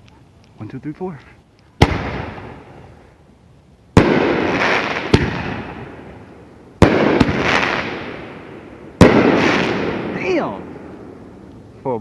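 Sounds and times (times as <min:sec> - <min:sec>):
firework shell booms with echo: 0:01.8 - 0:02.9, 0:04.0 - 0:11.2.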